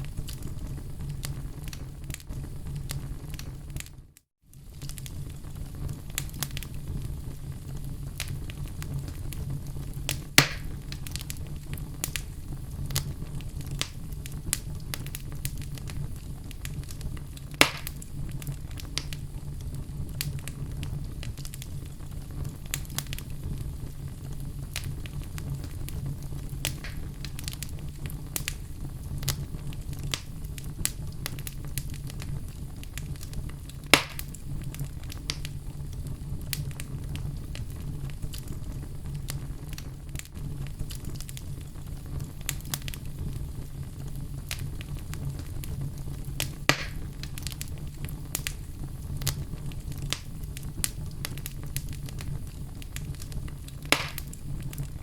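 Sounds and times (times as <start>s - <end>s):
fire crackling: 0.0s - 55.0s
logs popping: 10.1s - 11.3s, 17.5s - 18.1s, 24.7s - 27.7s, 33.8s - 34.4s, 46.4s - 47.7s, 53.8s - 55.0s.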